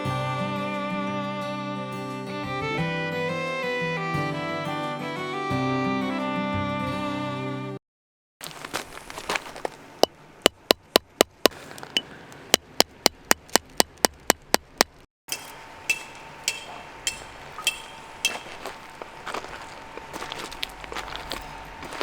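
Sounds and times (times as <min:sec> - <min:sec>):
sharp knocks: 0:10.0 - 0:18.8
slower ringing knocks: 0:15.3 - 0:18.8.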